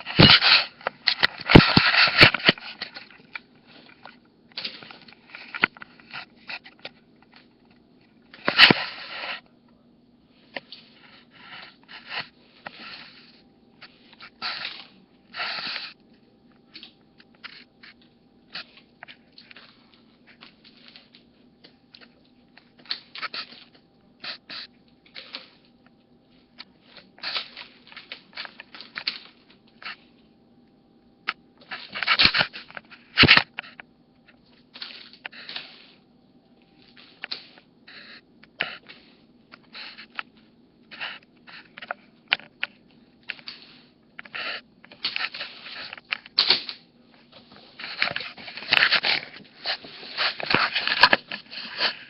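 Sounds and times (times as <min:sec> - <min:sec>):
cat paws scuffling and scratching: 0:10.4 - 0:16.0, 0:16.7 - 0:30.2, 0:34.4 - 0:36.0, 0:36.7 - 0:52.0.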